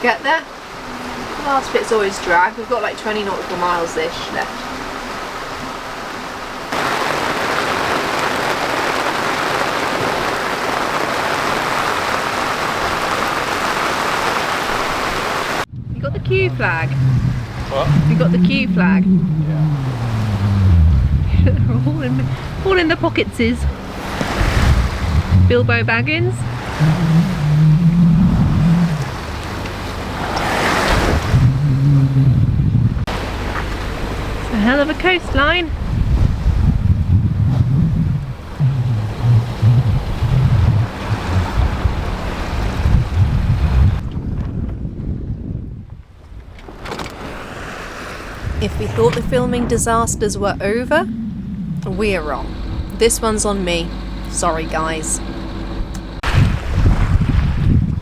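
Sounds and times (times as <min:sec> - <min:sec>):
heavy rain hiss: 0:00.0 - 0:15.7, 0:16.5 - 0:18.8, 0:19.4 - 0:27.8, 0:33.0 - 0:35.9, 0:51.8 - 0:57.0
rushing wash of noise: 0:00.6 - 0:37.7
steady low hum: 0:15.6 - 0:44.0, 0:48.4 - 0:57.1.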